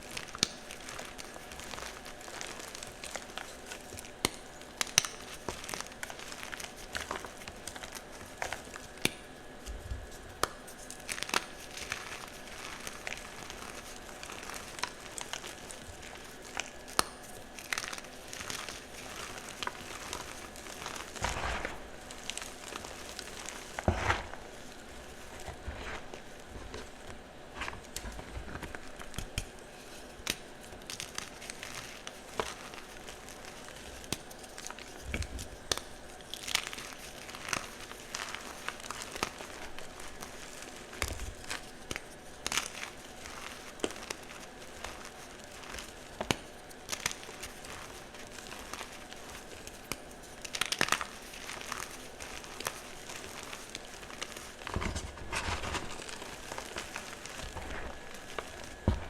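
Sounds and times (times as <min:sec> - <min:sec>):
chalk blocks crushed and crumbling: 0:10.4 - 0:27.0.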